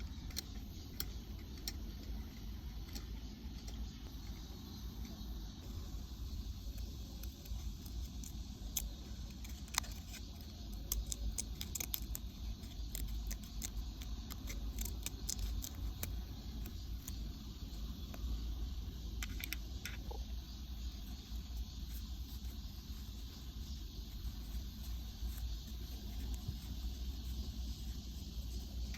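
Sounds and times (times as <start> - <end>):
small metallic clicks and taps: 0.0 - 5.2, 6.7 - 17.2, 19.2 - 20.2
steady low hum: 0.0 - 28.9.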